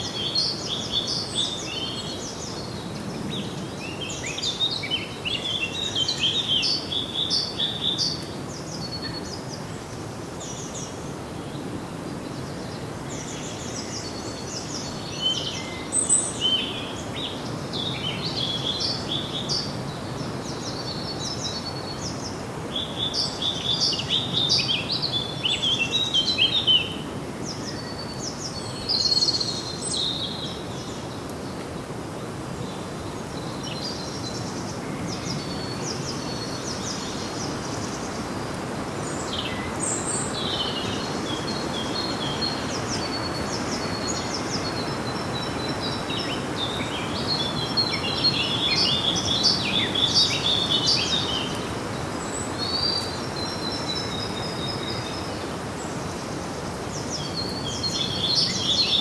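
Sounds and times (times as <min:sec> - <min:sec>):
background hiss: 0:00.0 - 0:59.0
small birds chirping and singing: 0:12.2 - 0:31.6, 0:32.6 - 0:59.0.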